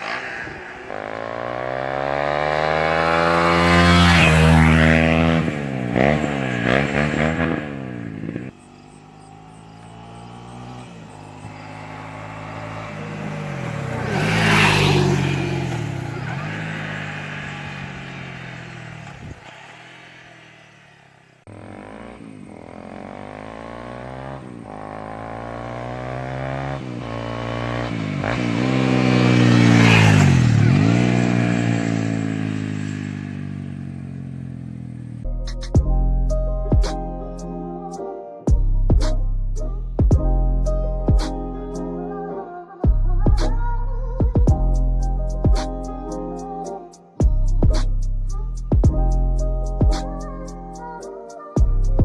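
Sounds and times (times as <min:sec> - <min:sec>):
motorcycle accelerating past: 0:00.0 - 0:35.2.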